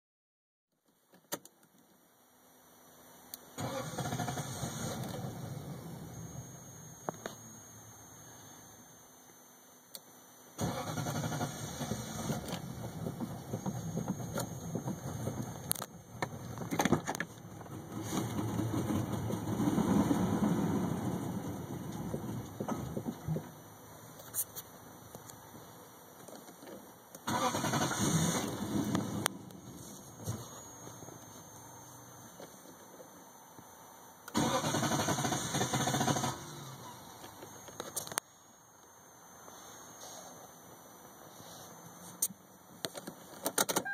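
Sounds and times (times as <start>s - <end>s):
car engine cranking: 3.6s - 5.7s, 10.6s - 23.0s, 27.2s - 29.6s, 34.3s - 37.4s.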